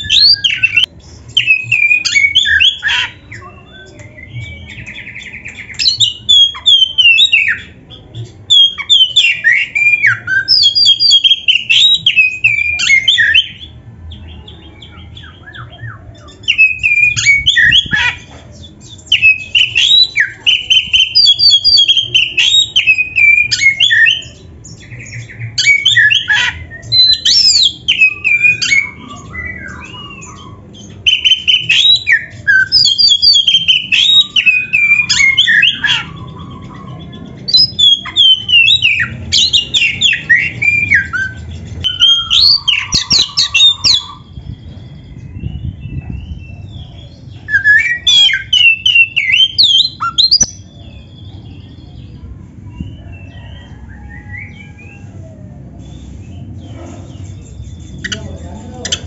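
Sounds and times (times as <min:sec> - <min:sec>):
bird whistling song: 0:00.0 - 0:59.0.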